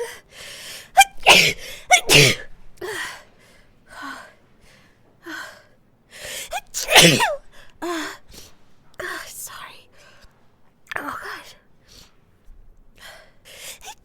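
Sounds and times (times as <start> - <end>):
woman sneezing: 1.0 - 2.5, 6.5 - 7.4.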